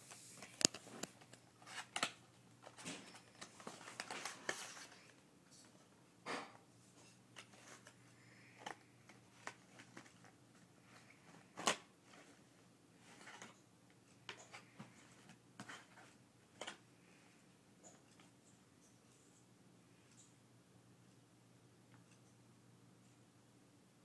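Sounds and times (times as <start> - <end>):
packaging clicks and rustles: 0.4 - 5.8, 7.4 - 12.4.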